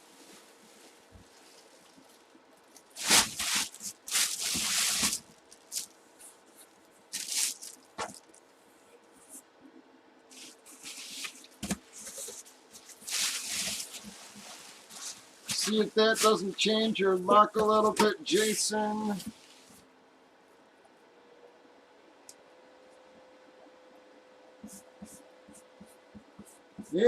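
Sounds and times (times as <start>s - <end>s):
plastic and cardboard crinkling: 0.0s - 8.5s, 10.3s - 19.7s.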